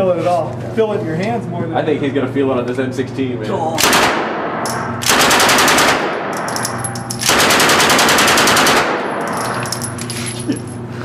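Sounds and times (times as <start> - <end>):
automatic rifle fire: 3.8 - 9.4.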